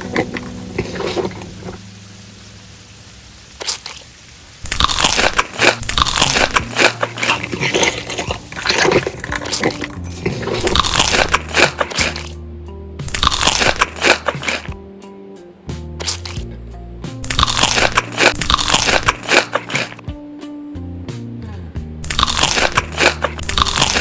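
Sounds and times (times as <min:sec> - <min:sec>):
crunchy food being chewed: 0:00.0 - 0:01.8, 0:03.6 - 0:04.0, 0:04.6 - 0:12.4, 0:13.1 - 0:14.8, 0:16.0 - 0:16.4, 0:17.2 - 0:20.0, 0:22.0 - 0:24.0
background music: 0:04.7 - 0:24.0.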